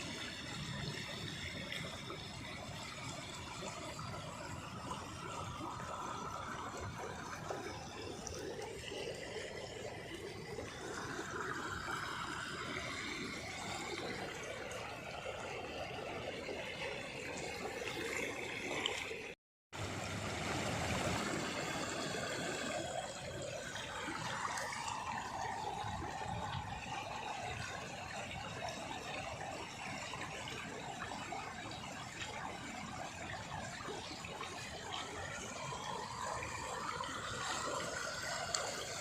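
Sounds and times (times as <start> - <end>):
running water: 0.0 - 39.0.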